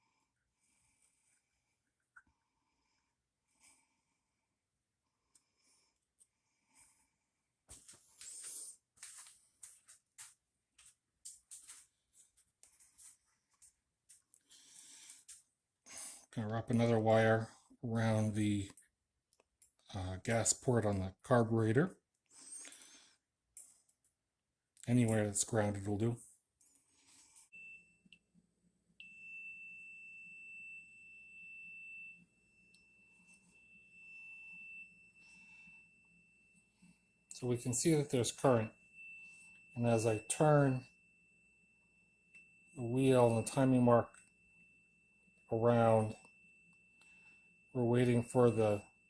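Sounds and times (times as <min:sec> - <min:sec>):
hands handling wire leads: 0:07.7 - 0:15.5
continuity tester beeping: 0:37.3 - 0:49.0.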